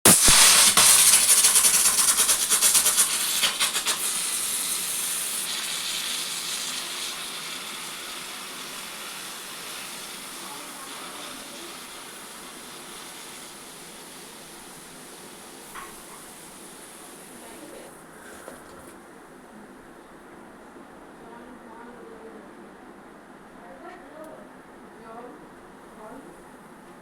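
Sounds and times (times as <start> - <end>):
pressure cooker steam hissing: 0.0 - 18.0.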